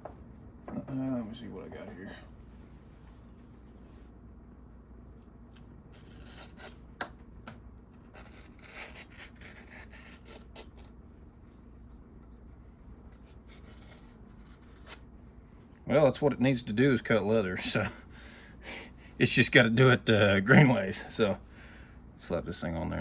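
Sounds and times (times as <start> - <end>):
blade scraping on leather: 5.9 - 6.8, 8.0 - 10.9.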